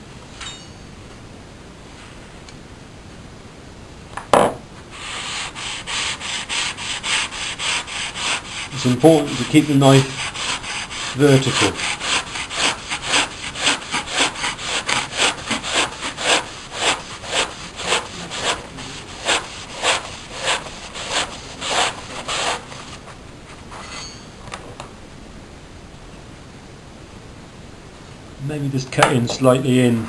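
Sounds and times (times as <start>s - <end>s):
knife sawing through kitchen paper: 5.0s - 23.0s.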